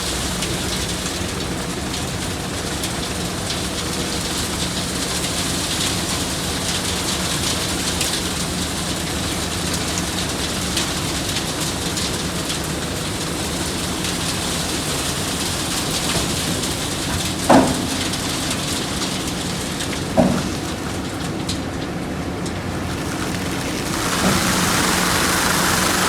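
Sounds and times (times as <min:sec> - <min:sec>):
diesel engines running: 0:00.0 - 0:26.0
constant hiss: 0:22.5 - 0:26.0.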